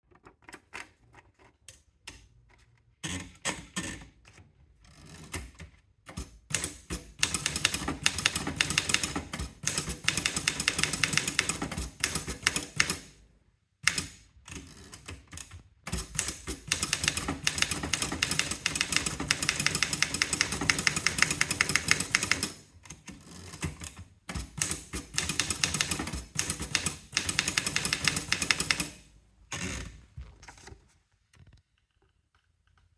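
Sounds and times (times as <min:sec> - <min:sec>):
typewriter key strikes: 0:24.3 - 0:29.0.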